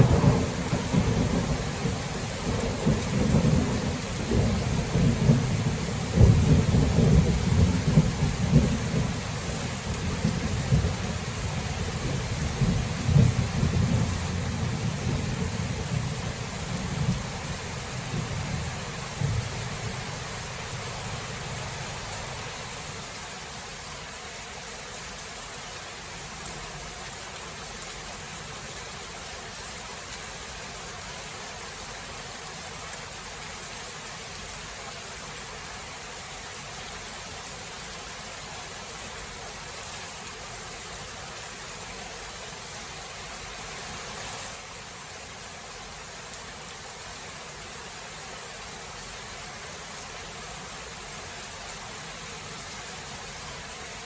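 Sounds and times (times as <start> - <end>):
thunder rumble: 0.0 - 22.4
steady rain hiss: 0.0 - 54.0.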